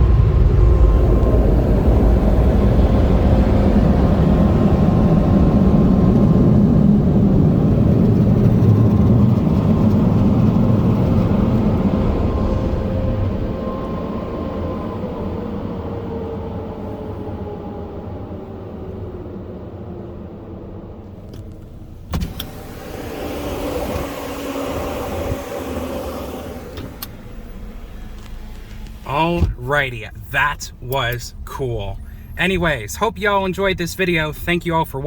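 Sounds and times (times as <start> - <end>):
dryer blowers roaring: 21.3 - 32.4.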